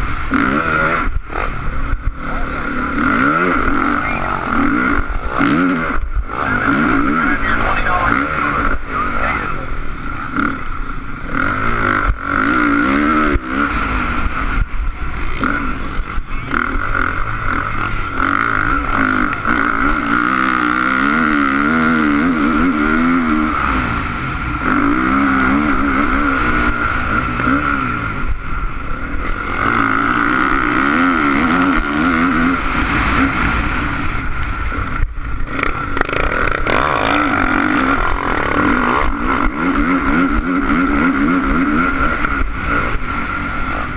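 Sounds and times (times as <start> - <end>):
motocross bike engine revving: 0.0 - 43.9
steady rushing noise: 0.0 - 43.9.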